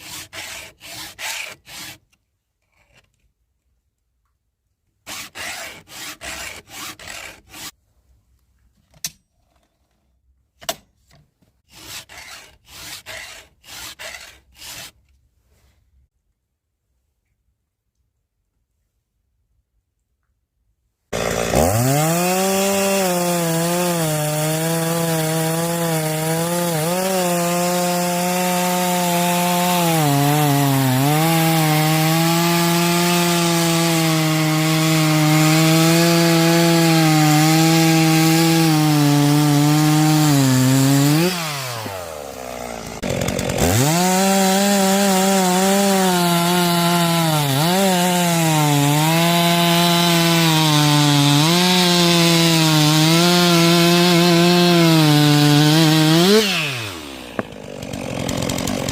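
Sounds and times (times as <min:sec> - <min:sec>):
chainsaw cutting wood: 0:00.0 - 0:02.0, 0:05.1 - 0:07.8, 0:11.7 - 0:15.0, 0:21.1 - 0:58.9.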